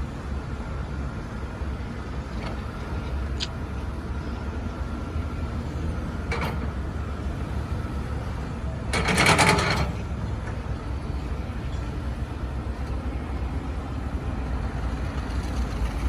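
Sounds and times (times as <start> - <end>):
excavator diesel engine rumbling: 0.0 - 16.0
metal clanks: 8.9 - 10.0.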